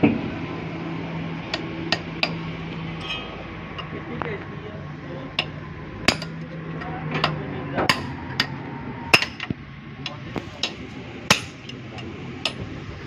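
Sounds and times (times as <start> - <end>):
hammer striking metal: 3.0 - 3.9, 5.4 - 6.4, 7.2 - 9.5, 10.6 - 11.7.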